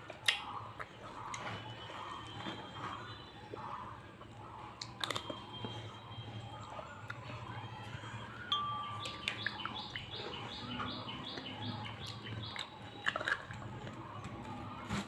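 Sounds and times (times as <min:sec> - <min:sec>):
person chewing watermelon: 0:00.0 - 0:15.0
high chirps: 0:08.5 - 0:13.3.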